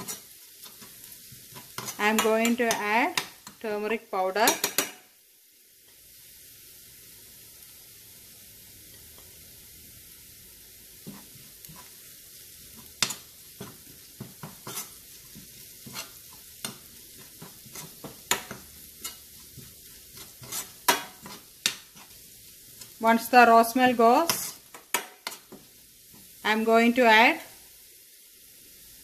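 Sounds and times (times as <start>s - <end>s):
spoon scraping a pan: 0.0s - 5.0s, 11.0s - 23.0s, 23.9s - 26.4s
food sizzling in oil: 0.0s - 29.0s.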